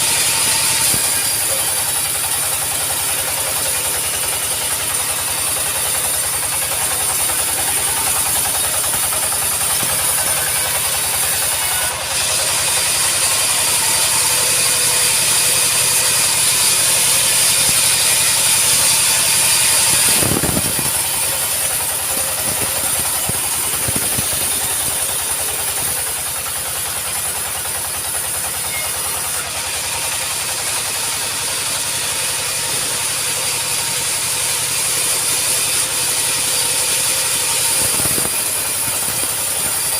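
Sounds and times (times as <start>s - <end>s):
engine pulse: 0.0s - 39.9s
loud high hiss: 0.0s - 39.9s
sawmill machinery running: 0.0s - 39.9s.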